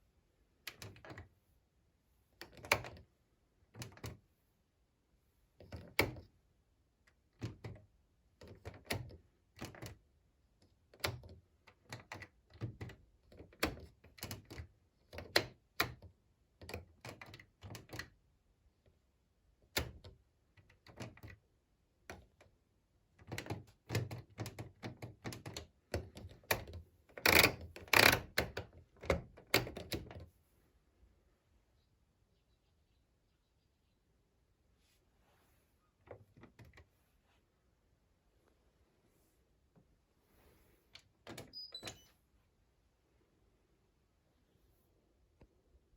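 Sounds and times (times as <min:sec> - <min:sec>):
washing machine controls clicking: 0:08.4 - 0:10.0, 0:23.2 - 0:30.3.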